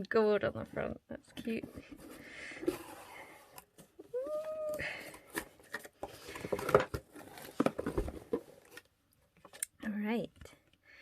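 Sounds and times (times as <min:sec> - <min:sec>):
paper and packaging crinkling: 0:04.2 - 0:08.9.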